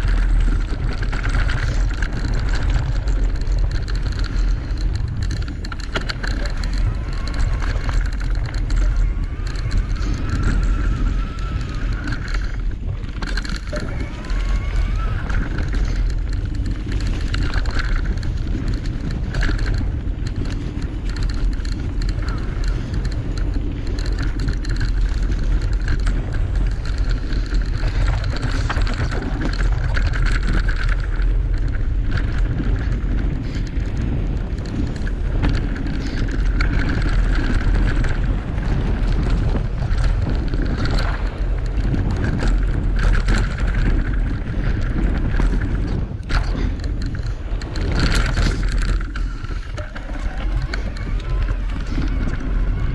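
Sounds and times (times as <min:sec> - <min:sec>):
bike rattling and knocking: 0:00.0 - 0:52.9
tyres rolling on trail: 0:00.0 - 0:52.9
wind buffeting microphone: 0:00.0 - 0:52.9.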